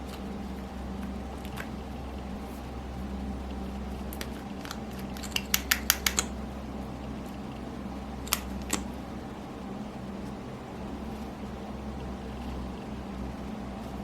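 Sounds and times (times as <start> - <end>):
steady low hum: 0.0 - 14.0
sharp clicks: 4.1 - 6.4, 8.2 - 8.9.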